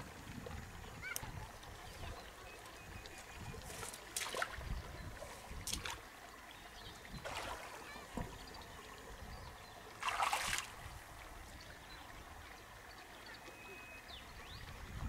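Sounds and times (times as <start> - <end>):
stream running: 0.0 - 15.0
water splashing: 1.0 - 9.1, 9.8 - 11.6.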